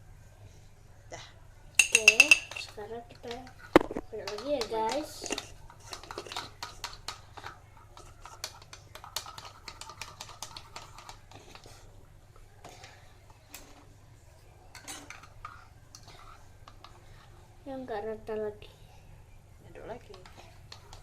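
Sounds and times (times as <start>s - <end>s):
metal utensil clinking against bowl: 1.8s - 3.4s.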